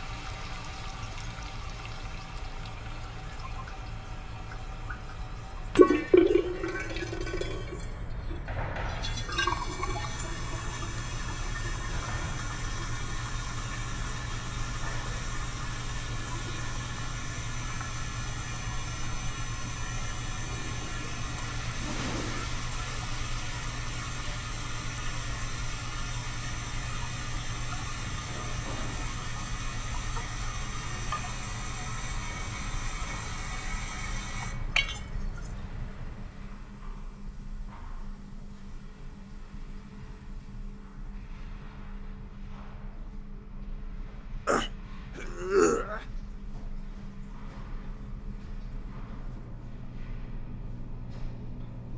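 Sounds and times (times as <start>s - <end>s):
toilet flushing: 0.0s - 34.5s
even hiss: 21.1s - 24.9s.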